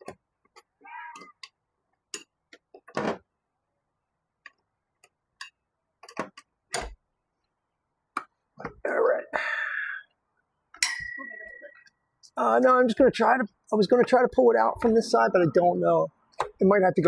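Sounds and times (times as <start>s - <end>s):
metal tools clicking and clinking: 10.8s - 11.9s.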